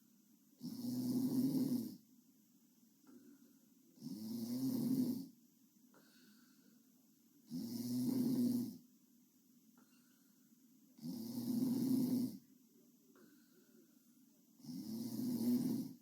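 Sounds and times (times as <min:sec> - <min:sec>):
girl snoring: 0:00.6 - 0:02.0, 0:04.0 - 0:05.3, 0:07.5 - 0:08.8, 0:11.0 - 0:12.4, 0:14.6 - 0:16.0
quiet breathing: 0:03.0 - 0:08.9, 0:09.8 - 0:16.0.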